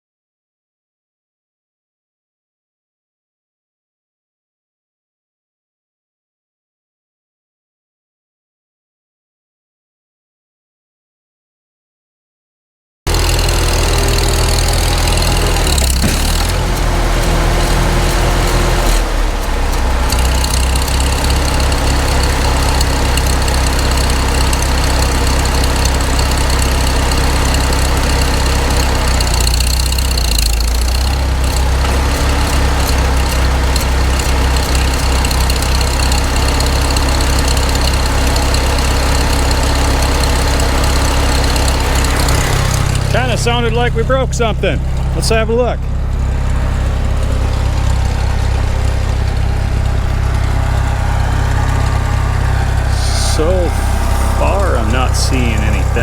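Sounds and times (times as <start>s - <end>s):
tractor engine under load: 13.1s - 56.0s.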